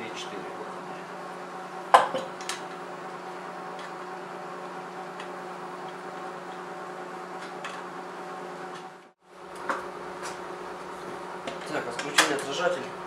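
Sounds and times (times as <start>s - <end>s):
workshop hum: 0.0s - 13.0s.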